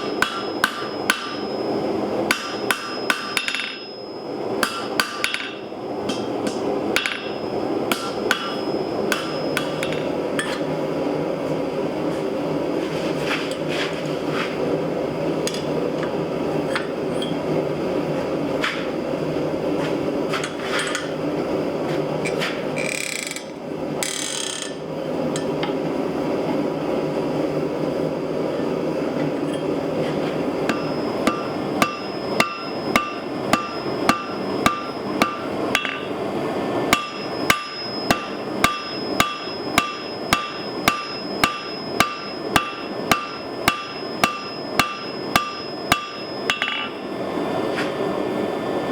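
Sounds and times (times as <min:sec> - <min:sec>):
hammer ringing on anvil: 0:00.0 - 0:10.7, 0:30.7 - 0:36.2, 0:36.9 - 0:47.1.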